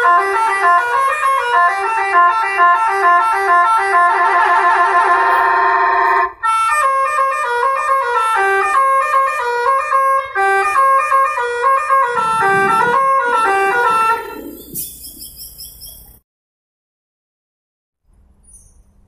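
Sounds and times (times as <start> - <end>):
bus musical horn playing a tune: 0.0 - 14.6
low rumble: 11.9 - 14.6.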